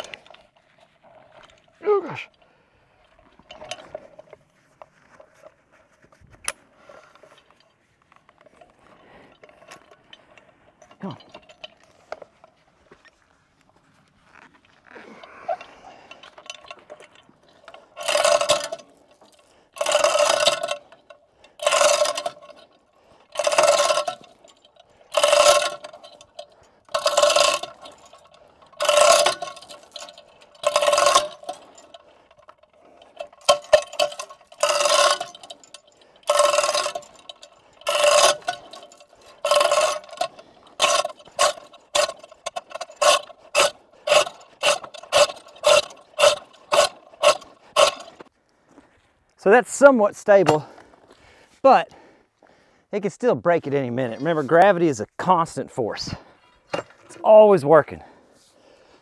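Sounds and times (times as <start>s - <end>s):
chain hoist rattling and ratcheting: 0.0s - 4.4s, 6.4s - 13.2s, 14.3s - 48.3s, 49.4s - 51.9s, 53.0s - 59.0s
metallic ring: 15.5s - 48.3s.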